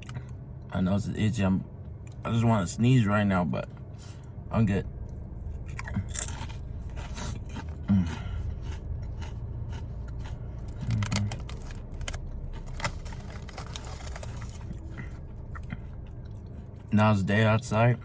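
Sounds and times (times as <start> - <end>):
steady low hum: 0.0 - 18.0
person chewing potato chips: 5.4 - 17.0.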